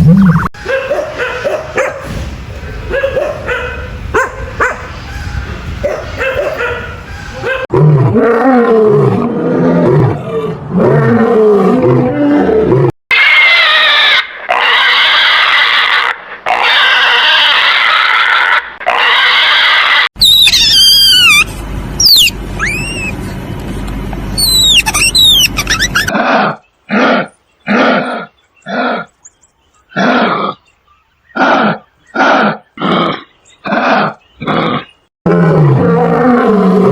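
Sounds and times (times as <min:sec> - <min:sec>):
high warbling animal calls: 0:00.0 - 0:01.5, 0:16.6 - 0:23.2, 0:24.4 - 0:26.2
quick up-and-down whistles: 0:20.2 - 0:21.4, 0:22.0 - 0:23.1, 0:24.4 - 0:25.5
low wavering animal calls: 0:20.2 - 0:23.2, 0:24.4 - 0:26.2.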